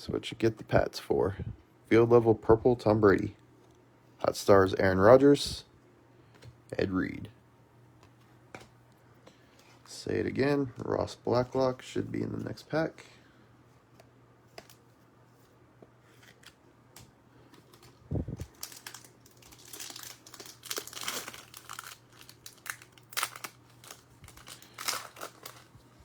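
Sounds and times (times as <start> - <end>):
wrapper tearing and crinkling: 17.7 - 25.8.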